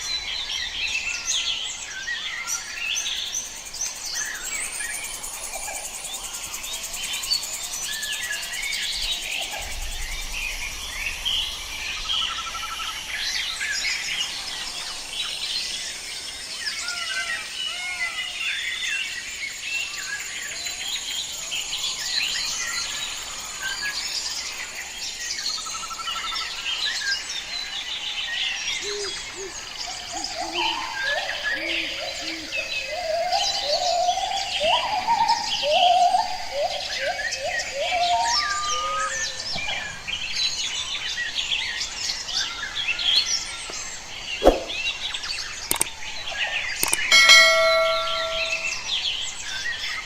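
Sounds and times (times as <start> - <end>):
insect drone: 0.0 - 39.5
birds chirping: 28.7 - 49.1
rattling trill: 46.8 - 48.8.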